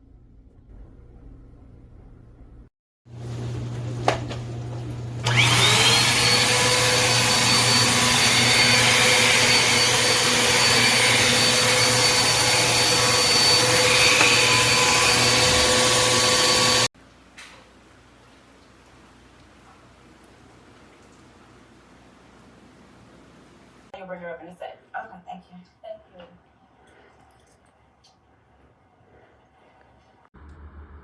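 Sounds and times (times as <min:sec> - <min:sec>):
vacuum cleaner motor whine: 0:03.1 - 0:16.9.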